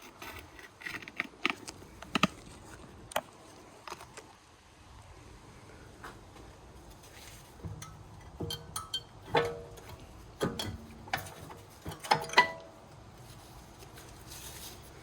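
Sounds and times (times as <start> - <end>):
faint handling noise: 5.9 - 15.0
metallic clicks of brake pad: 7.6 - 13.0.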